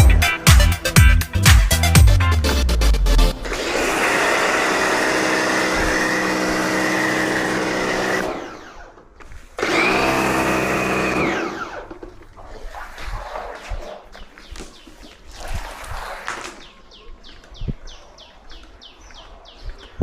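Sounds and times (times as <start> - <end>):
pressure washer motor running: 3.4 - 8.9, 9.6 - 12.0.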